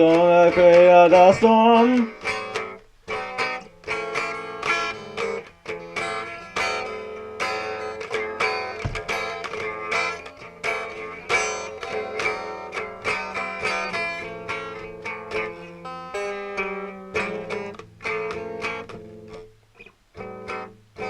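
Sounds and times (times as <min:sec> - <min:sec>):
guitar strumming: 0:00.0 - 0:21.0.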